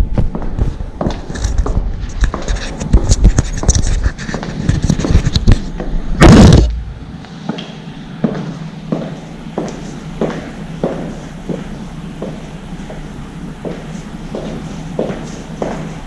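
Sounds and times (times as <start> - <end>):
wind rumble on microphone: 0.0 - 7.1
high-heeled shoes clicking: 0.1 - 6.0, 7.4 - 16.0
short rushing noise: 4.0 - 7.1.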